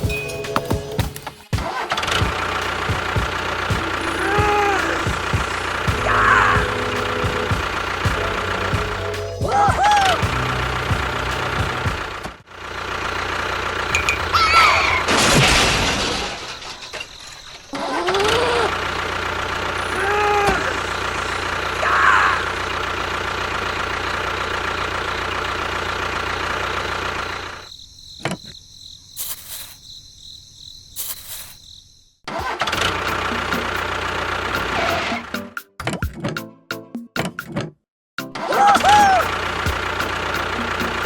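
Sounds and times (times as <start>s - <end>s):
engine running: 0.0s - 16.2s, 18.0s - 27.7s, 32.4s - 35.4s, 38.8s - 41.0s.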